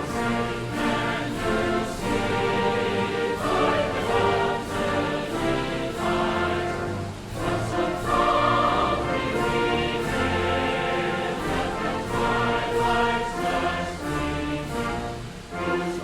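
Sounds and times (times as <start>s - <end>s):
song accompaniment with bass line: 0.0s - 16.0s.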